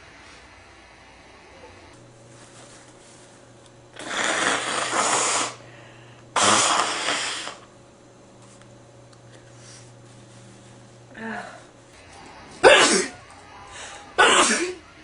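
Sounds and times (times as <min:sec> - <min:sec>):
person blowing nose: 0:04.0 - 0:05.6, 0:06.4 - 0:07.7.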